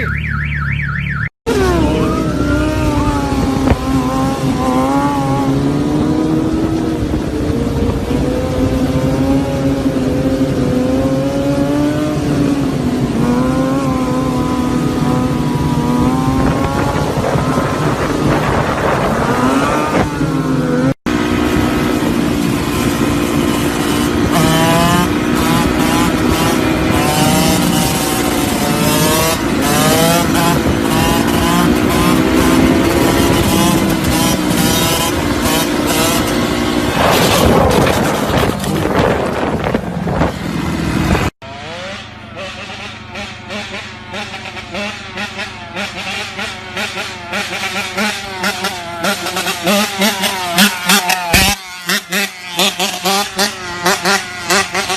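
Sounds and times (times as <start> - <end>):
motorcycle engines revving: 0.0 - 54.9.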